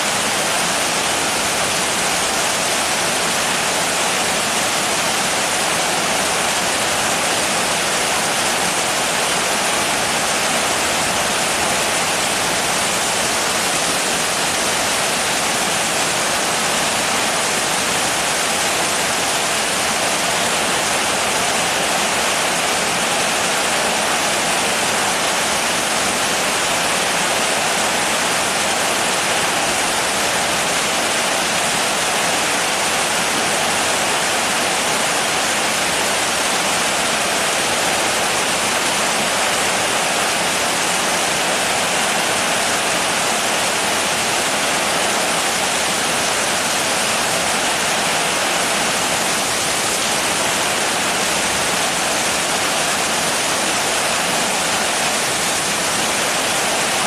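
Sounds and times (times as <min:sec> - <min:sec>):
steady heavy rain: 0:00.0 - 0:57.0.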